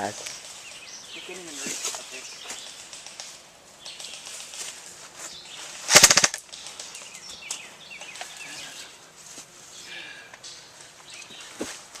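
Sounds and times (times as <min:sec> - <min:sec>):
airsoft gun burst: 0:05.9 - 0:06.4.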